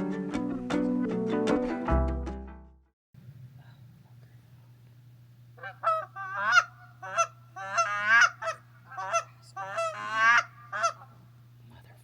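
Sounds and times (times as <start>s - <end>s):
geese honking: 5.6s - 11.2s.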